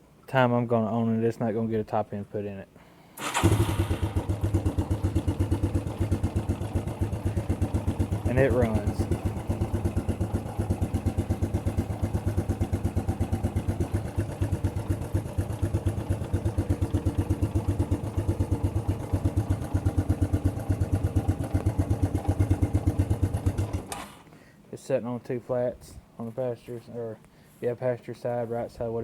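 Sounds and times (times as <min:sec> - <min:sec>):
engine idling with rapid putter: 0:03.2 - 0:24.0.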